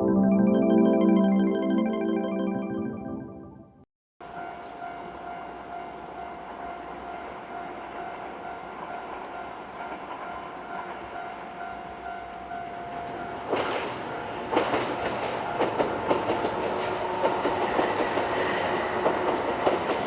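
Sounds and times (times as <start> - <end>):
level-crossing warning bell: 4.2 - 20.0
train rumble: 4.3 - 20.0.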